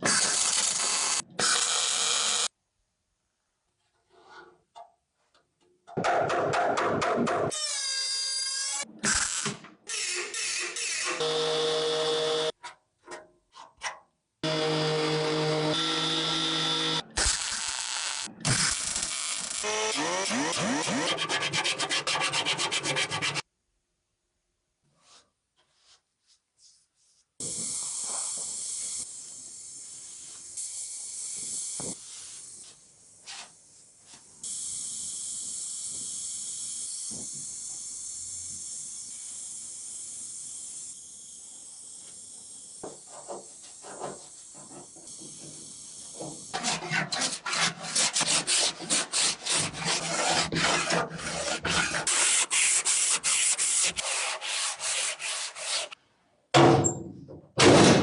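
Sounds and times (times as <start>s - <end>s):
sanding rasping hiss: 41.4s - 56.0s.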